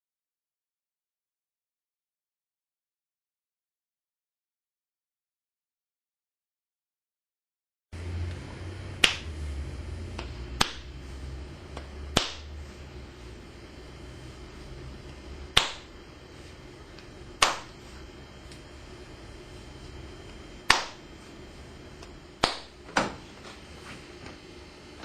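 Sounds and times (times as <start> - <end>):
sharp slapping clicks: 9.0 - 9.3, 10.2 - 10.9, 11.8 - 12.5, 15.5 - 15.9, 17.4 - 17.7, 20.7 - 21.0, 22.4 - 22.8.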